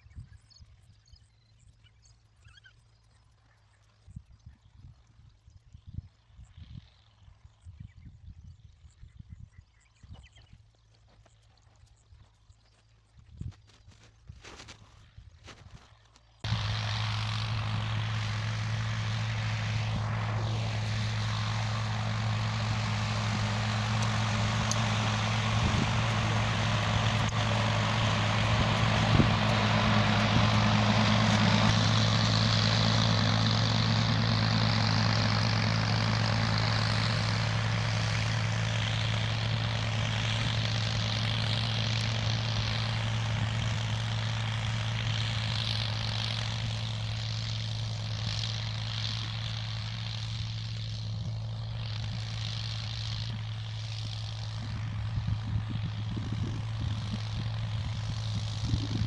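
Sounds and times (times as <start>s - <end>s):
tractor engine humming: 16.5s - 59.0s.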